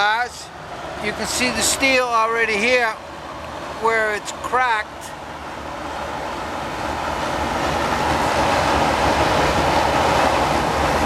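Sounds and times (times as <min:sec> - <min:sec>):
steady rumbling noise: 0:00.0 - 0:11.0.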